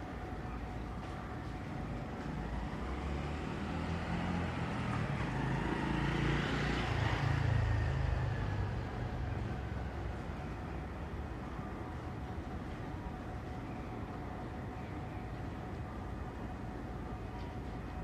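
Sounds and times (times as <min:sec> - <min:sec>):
vehicle passing close by: 0:03.1 - 0:08.9.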